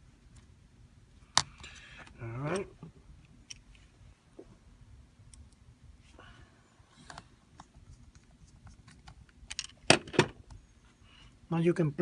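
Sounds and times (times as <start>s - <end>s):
small parts clicking and tapping: 7.1s - 10.2s.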